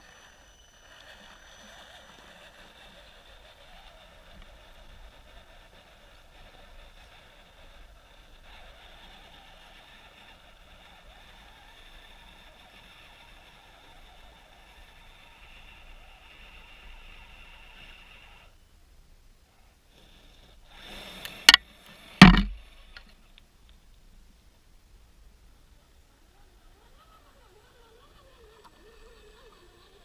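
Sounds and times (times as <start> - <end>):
small electric motor whining: 0.0 - 18.6, 26.3 - 30.0
loud sharp knocks: 22.2 - 22.6.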